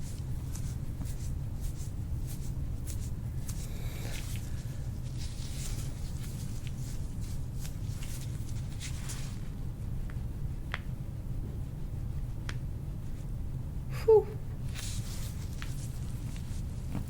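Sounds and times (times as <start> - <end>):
hands rustling through hair: 0.0 - 10.9, 14.5 - 17.0.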